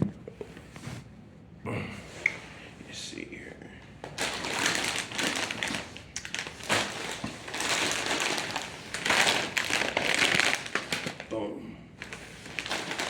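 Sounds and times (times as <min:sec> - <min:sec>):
foil chip bag crinkling: 0:04.1 - 0:13.0.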